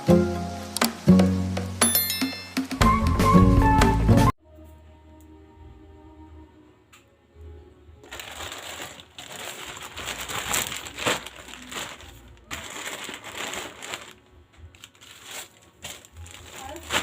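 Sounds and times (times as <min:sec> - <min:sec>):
faint background music: 0:00.0 - 0:17.0
packaging crinkling and rustling: 0:08.0 - 0:17.0.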